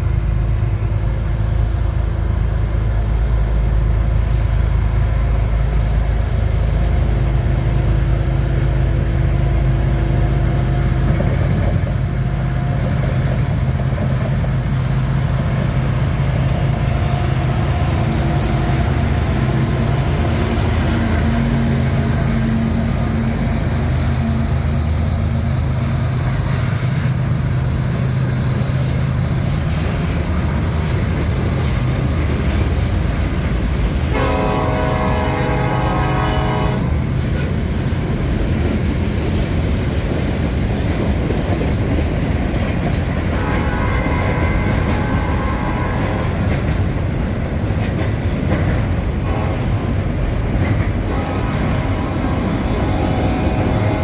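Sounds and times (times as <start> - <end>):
diesel locomotive engines droning: 0.0 - 54.0
train horn tones: 34.1 - 37.1, 43.3 - 46.6, 49.1 - 54.0.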